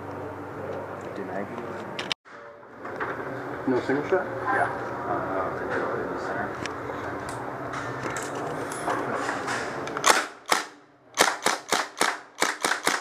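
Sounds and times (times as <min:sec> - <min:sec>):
airsoft gun shots: 0:10.0 - 0:13.0.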